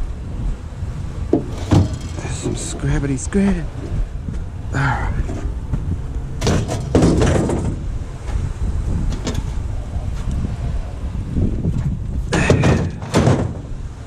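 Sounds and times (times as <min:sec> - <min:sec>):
low steady rumble: 0:00.0 - 0:14.0
scrap metal knocking and clattering: 0:01.3 - 0:02.9, 0:06.4 - 0:07.8, 0:12.3 - 0:13.7.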